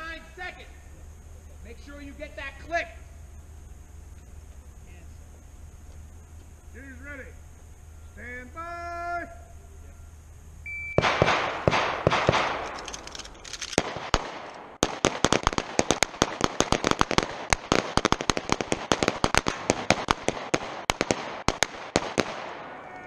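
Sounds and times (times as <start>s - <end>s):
high electronic beep: 10.6s - 11.0s
pistol shots with echo: 11.0s - 12.8s, 13.8s - 22.8s.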